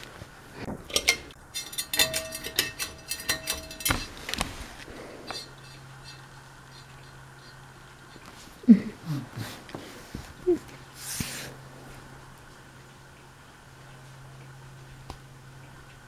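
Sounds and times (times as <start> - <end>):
low steady hum: 0.0 - 16.0
metal pull chain jingling: 0.9 - 4.2.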